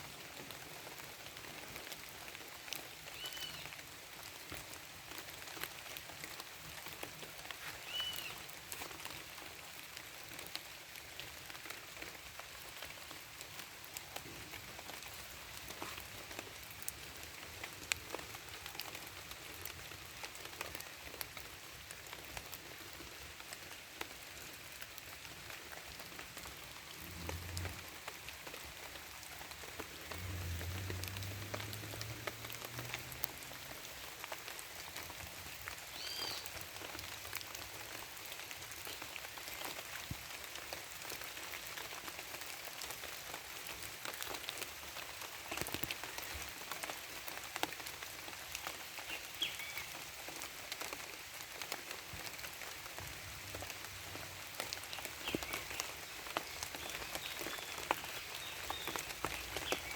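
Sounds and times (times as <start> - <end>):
rain pattering: 0.0 - 59.9
bird chirping: 7.8 - 8.4.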